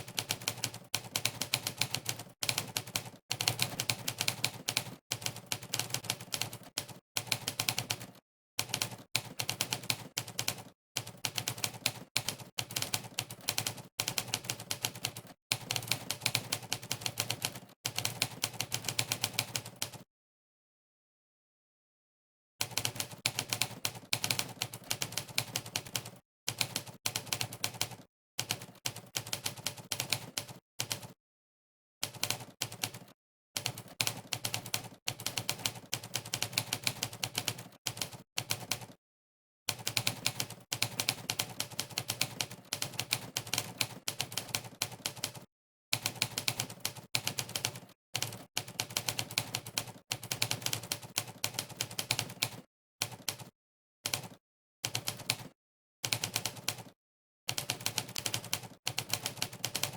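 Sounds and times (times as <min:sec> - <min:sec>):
typewriter keystroke clacks: 0:39.7 - 0:53.5, 0:54.1 - 0:56.9, 0:57.5 - 0:59.9.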